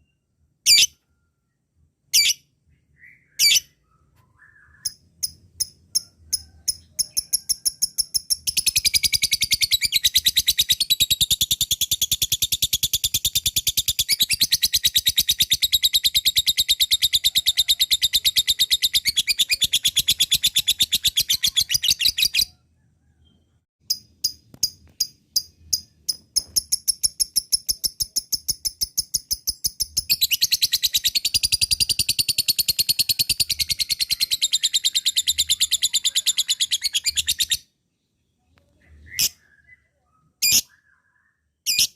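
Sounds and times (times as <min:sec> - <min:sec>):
lovebird chattering trill: 0:04.6 - 0:22.5.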